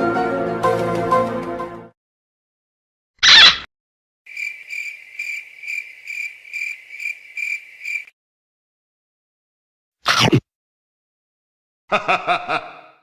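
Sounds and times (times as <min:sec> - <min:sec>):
cricket chirping sound effect: 0:04.3 - 0:08.1.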